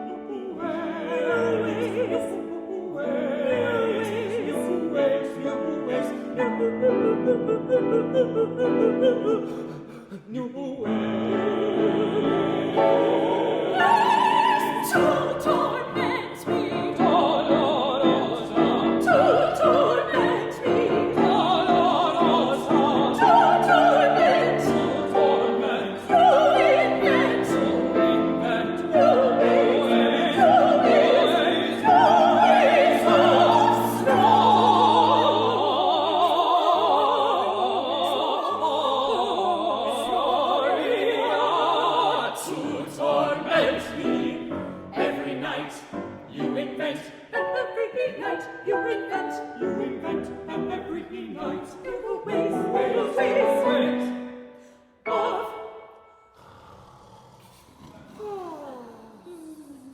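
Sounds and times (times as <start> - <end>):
vocal quartet singing operatically: 0.0 - 59.9
piano accompaniment: 10.9 - 36.2.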